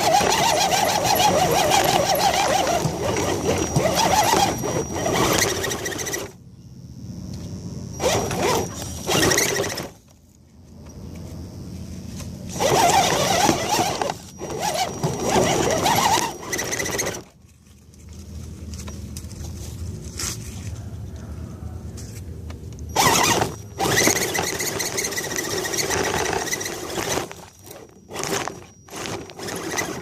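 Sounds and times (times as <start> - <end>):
electric motor whining: 0.0 - 10.1, 10.7 - 17.4, 22.9 - 30.0.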